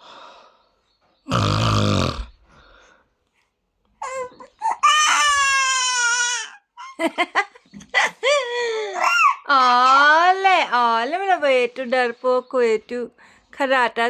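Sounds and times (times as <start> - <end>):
man snoring loudly: 1.3 - 2.4
whimpering and wailing cry: 4.0 - 7.0, 8.9 - 9.5.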